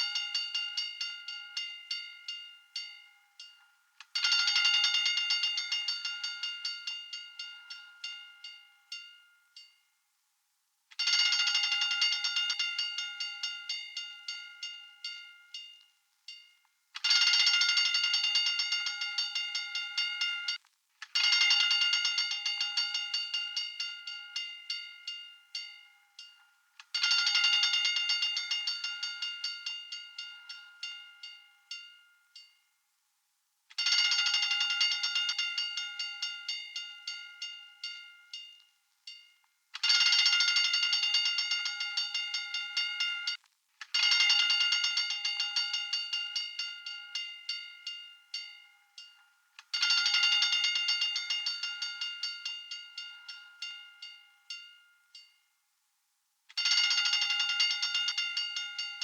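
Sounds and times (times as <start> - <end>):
fire alarm bell clanging: 11.0 - 20.6, 33.8 - 43.4, 44.0 - 55.3, 56.6 - 59.0.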